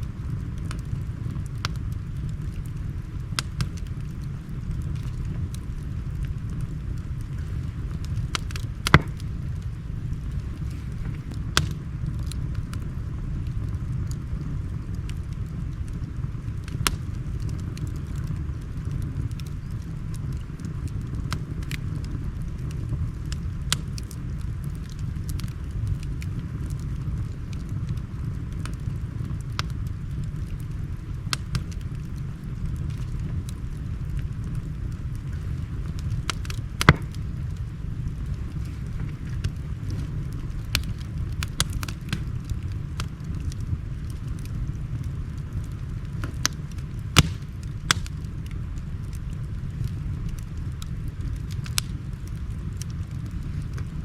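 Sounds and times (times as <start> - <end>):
wood fire crackling: 0.0 - 54.0
sharp pops: 8.9 - 9.2, 36.3 - 37.2, 47.2 - 48.0.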